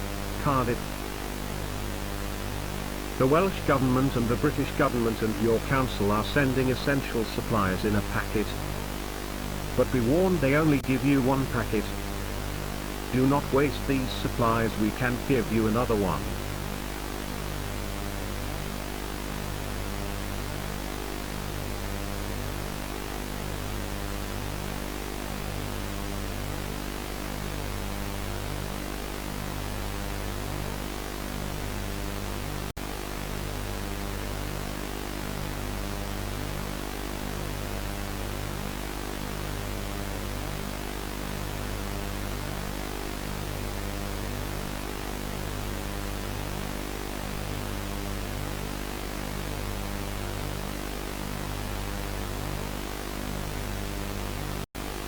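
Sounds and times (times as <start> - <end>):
static hiss: 0.0 - 55.0.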